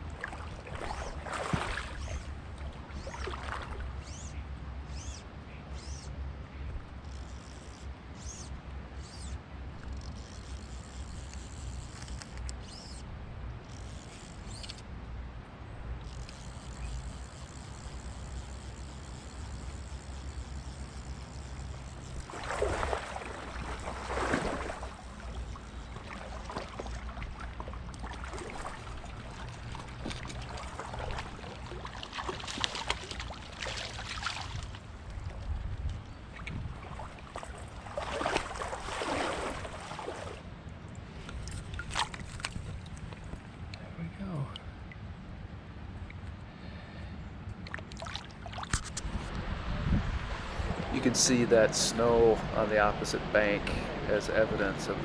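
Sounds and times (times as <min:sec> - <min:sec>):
water splashing: 0:00.0 - 0:03.9, 0:17.5 - 0:35.2, 0:36.3 - 0:40.5, 0:47.6 - 0:55.0
faint flowing water: 0:00.0 - 0:55.0
low hum: 0:48.7 - 0:55.0.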